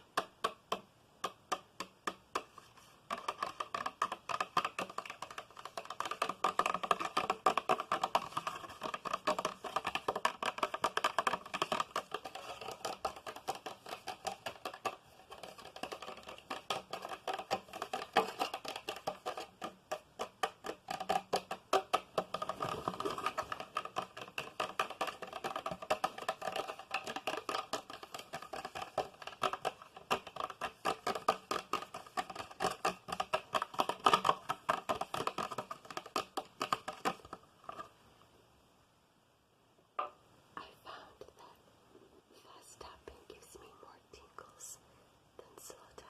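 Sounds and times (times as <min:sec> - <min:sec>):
rapid tapping: 0:00.0 - 0:37.9.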